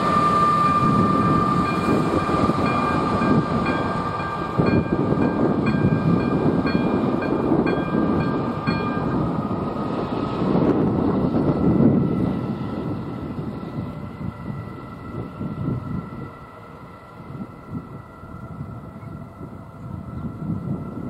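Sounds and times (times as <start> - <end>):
crossing warning bell dinging: 0.0 - 9.8
high whine: 0.0 - 10.0
train rumbling past: 0.0 - 21.0.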